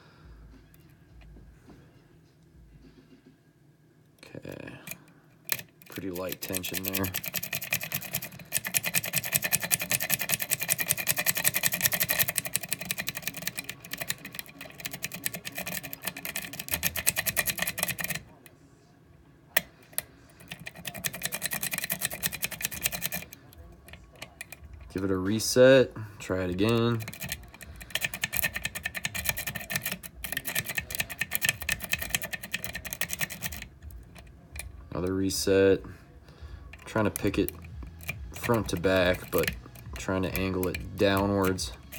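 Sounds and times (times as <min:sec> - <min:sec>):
lock pick clicking in padlock: 0:05.5 - 0:18.2, 0:19.9 - 0:24.8, 0:27.0 - 0:34.8.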